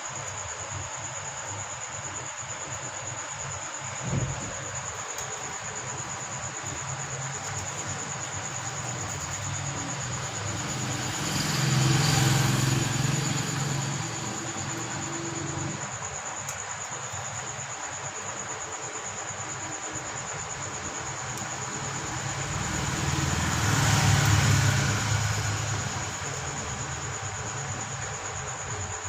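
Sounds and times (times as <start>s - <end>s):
high-pitched insect trill: 0.0s - 29.0s
vehicle passing: 6.8s - 15.9s, 21.1s - 28.0s.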